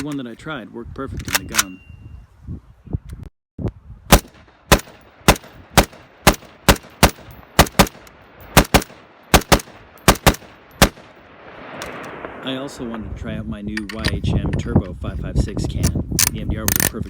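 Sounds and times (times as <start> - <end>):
rifle shots with echo: 4.1 - 12.6.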